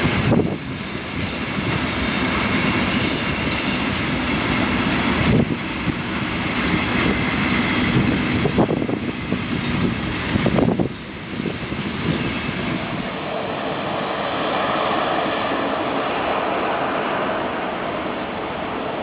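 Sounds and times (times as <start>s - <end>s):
steady rushing: 7.8s - 19.0s.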